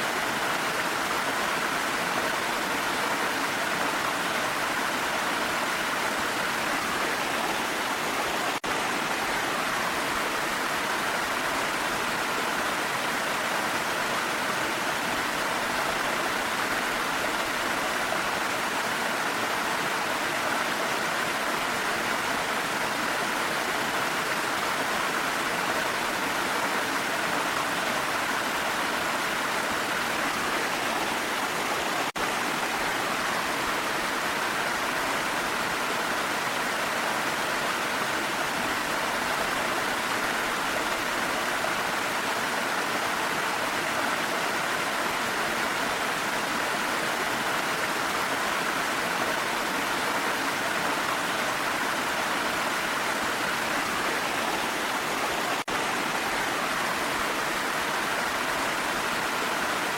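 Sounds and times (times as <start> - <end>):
waterfall rushing: 0.0 - 59.9.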